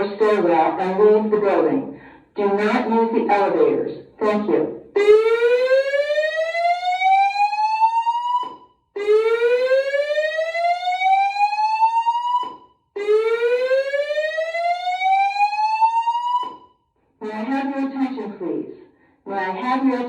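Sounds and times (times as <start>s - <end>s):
fire alarm whoop tone: 5.0s - 16.8s.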